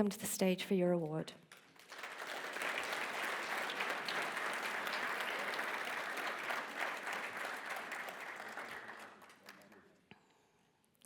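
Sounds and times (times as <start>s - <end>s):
audience applauding: 1.5s - 10.0s.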